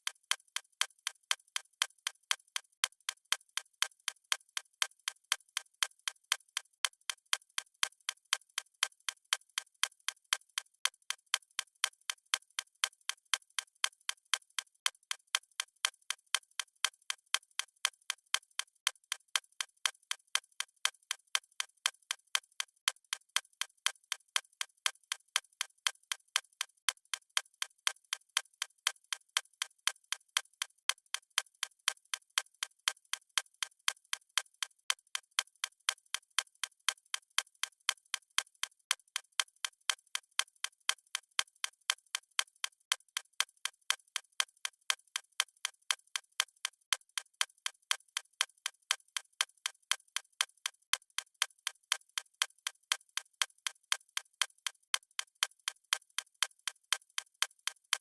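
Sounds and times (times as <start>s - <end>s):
watch ticking: 22.9s - 58.0s.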